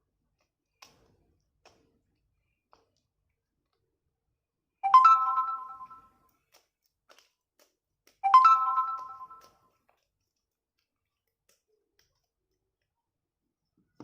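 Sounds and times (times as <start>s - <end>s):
electronic bell-like chime: 4.8s - 6.1s, 8.2s - 9.4s.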